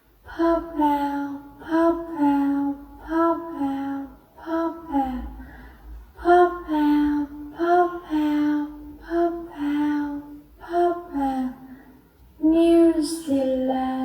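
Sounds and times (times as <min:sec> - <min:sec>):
woman speaking sing-song: 0:06.2 - 0:11.6, 0:12.4 - 0:14.0.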